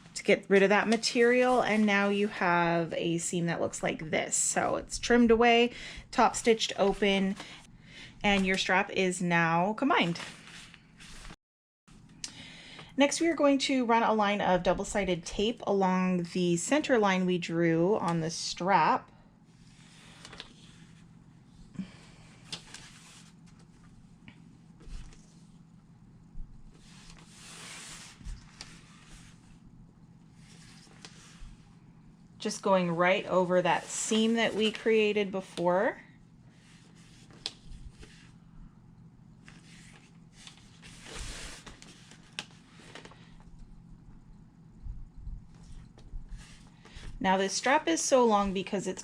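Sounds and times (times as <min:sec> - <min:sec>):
tape rubbing and rustling: 0:22.4 - 0:24.0, 0:26.4 - 0:29.6, 0:36.6 - 0:38.4, 0:39.4 - 0:43.7
tape rustle: 0:39.4 - 0:43.7.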